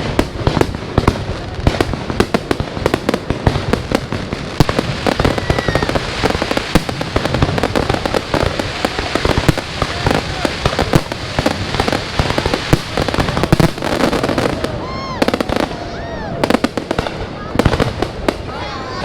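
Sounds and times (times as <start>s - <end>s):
fireworks bangs and crackles: 0.0s - 19.0s
firework whistle: 4.6s - 7.0s.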